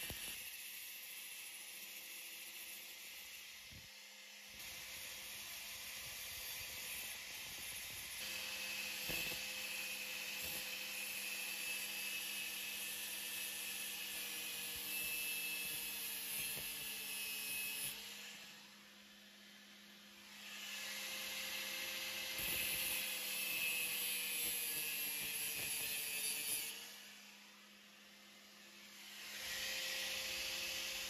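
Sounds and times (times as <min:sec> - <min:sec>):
die grinder grinding metal: 0:00.0 - 0:00.7, 0:04.6 - 0:18.5, 0:21.4 - 0:27.0.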